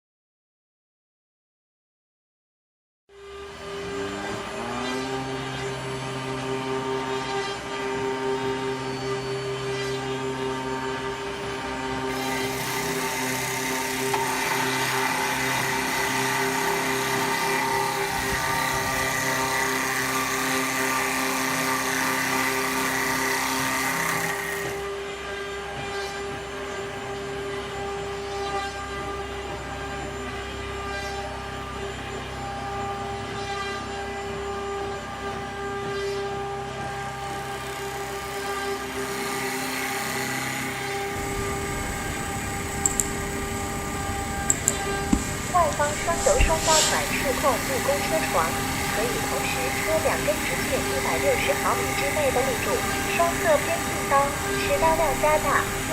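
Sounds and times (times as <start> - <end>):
machine motors humming: 3.2 - 55.9
hiss of wood being cut: 12.1 - 24.8, 41.1 - 55.9
high steady tone: 41.2 - 55.9
sharp clicks: 42.8 - 43.2, 44.5 - 45.3.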